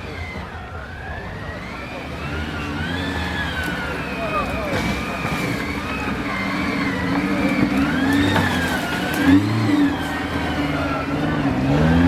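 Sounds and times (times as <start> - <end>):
vehicle engine revving: 0.0 - 12.0.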